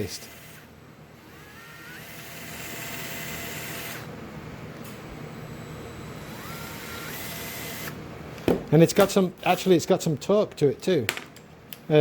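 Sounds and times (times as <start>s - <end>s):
electric screwdriver motor whining: 0.0s - 4.1s, 5.6s - 8.0s.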